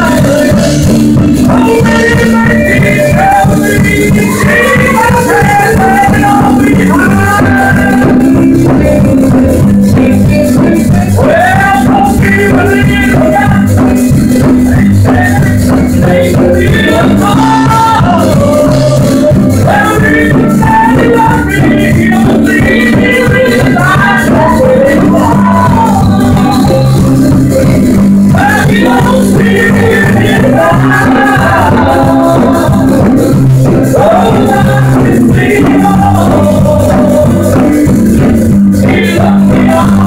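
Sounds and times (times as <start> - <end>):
instrumental accompaniment: 0.0 - 40.0
person singing religious song: 0.0 - 40.0.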